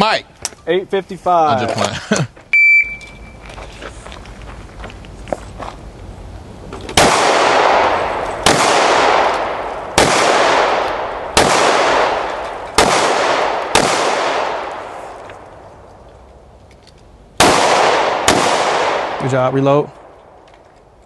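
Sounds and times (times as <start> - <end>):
gunshots with ringing echo: 7.0 - 15.2, 17.4 - 20.1.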